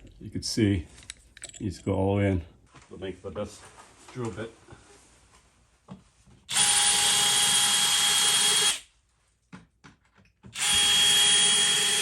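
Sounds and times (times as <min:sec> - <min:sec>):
power drill whining: 0:06.5 - 0:08.8, 0:10.6 - 0:12.0.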